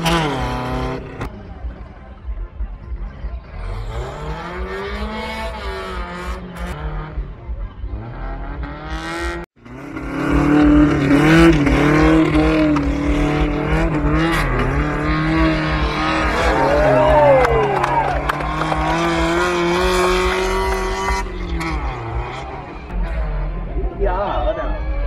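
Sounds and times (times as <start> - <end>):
off-road vehicle engine revving: 0.0 - 25.0.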